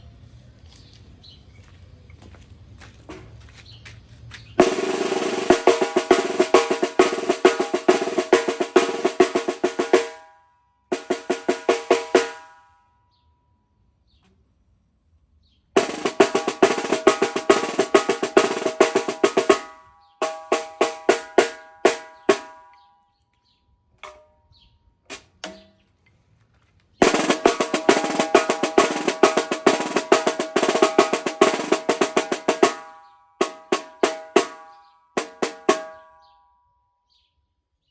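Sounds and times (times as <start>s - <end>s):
snare drum rolls and strokes: 4.6s - 10.3s, 10.9s - 12.5s, 15.8s - 22.8s, 25.1s - 25.7s, 27.0s - 36.0s.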